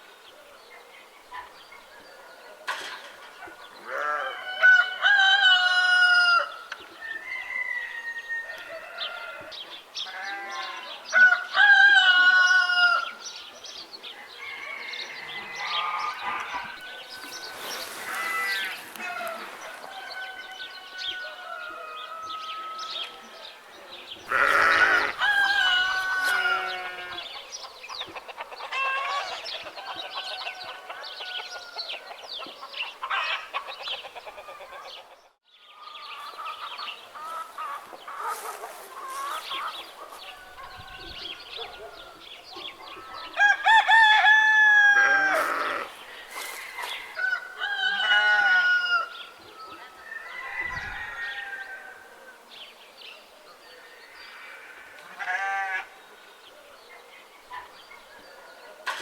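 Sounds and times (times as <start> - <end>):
rooster crowing: 4.1 - 9.5, 14.2 - 23.1, 24.3 - 27.3, 43.1 - 49.2, 49.8 - 52.1
chickens clucking: 25.0 - 35.3, 36.1 - 43.4.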